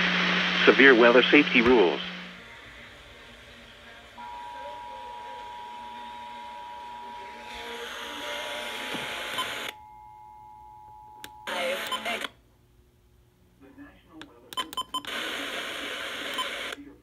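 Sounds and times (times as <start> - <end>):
radio noise hiss: 0.0 - 6.6, 13.6 - 17.0.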